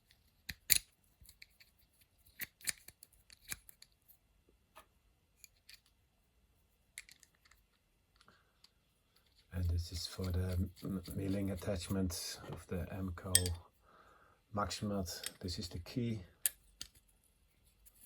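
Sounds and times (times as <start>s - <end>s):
metal parts clicking in hands: 0.1s - 3.9s, 7.0s - 8.3s, 13.3s - 13.6s.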